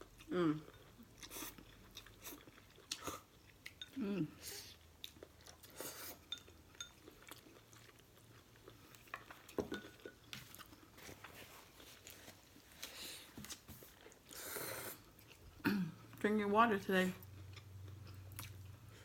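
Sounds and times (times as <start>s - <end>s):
chewing: 0.0s - 16.2s, 17.2s - 19.0s
utensils clinking against a bowl: 6.2s - 7.1s, 9.1s - 10.6s.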